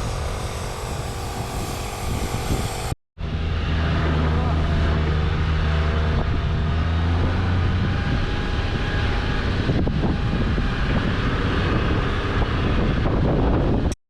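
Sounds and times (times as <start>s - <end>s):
steady rushing noise: 0.0s - 14.0s
car engine humming: 0.2s - 11.4s.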